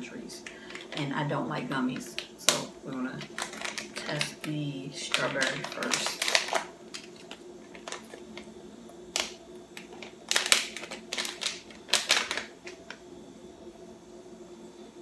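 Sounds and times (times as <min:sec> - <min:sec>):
plastic packet crinkling: 0:00.4 - 0:01.3, 0:03.2 - 0:08.5, 0:09.1 - 0:13.0.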